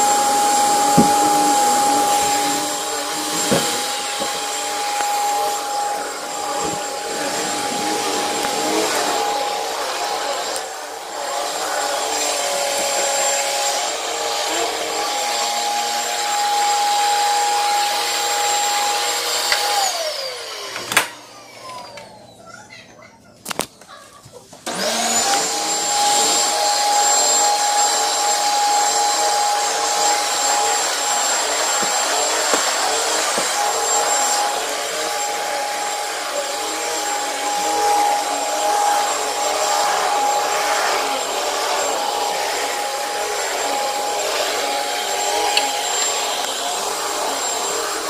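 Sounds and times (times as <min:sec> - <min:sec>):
vacuum cleaner whining: 0:00.0 - 0:22.5, 0:24.5 - 0:48.0.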